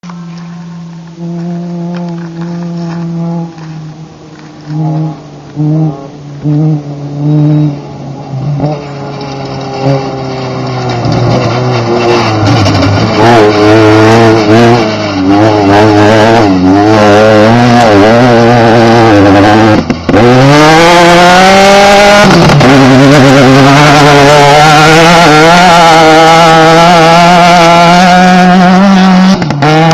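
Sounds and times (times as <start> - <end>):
race car engine revving: 0.0 - 29.9
short horn blasts: 1.1 - 19.8.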